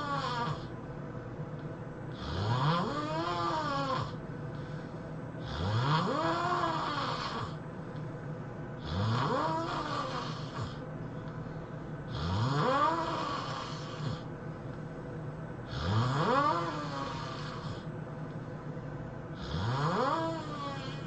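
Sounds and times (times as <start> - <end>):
person snoring: 0.0 - 0.7, 2.1 - 4.8, 5.4 - 7.6, 8.8 - 10.8, 12.1 - 14.3, 15.6 - 17.9, 19.4 - 21.0.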